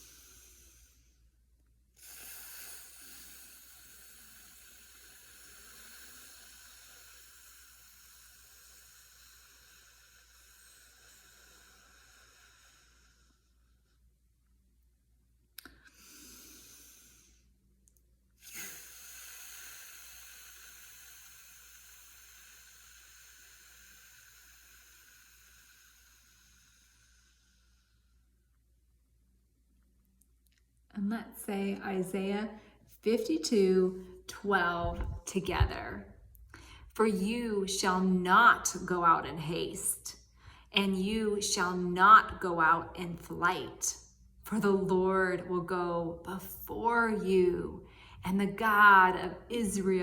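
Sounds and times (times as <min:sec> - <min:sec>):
woman breathing in: 0:00.0 - 0:01.4, 0:02.0 - 0:14.0, 0:15.6 - 0:17.6, 0:18.4 - 0:28.5, 0:36.0 - 0:37.0, 0:40.2 - 0:40.7, 0:47.8 - 0:48.2
woman exhaling through teeth: 0:18.4 - 0:28.2.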